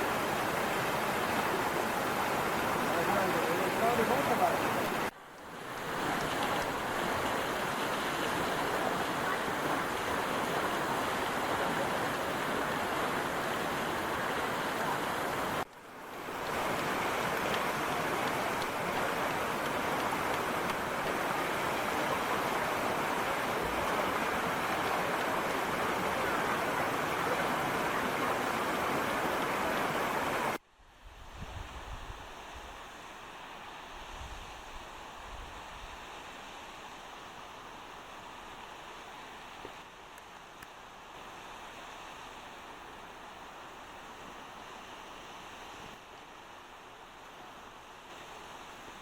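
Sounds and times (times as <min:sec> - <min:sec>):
waterfall rushing: 0:00.0 - 0:30.6.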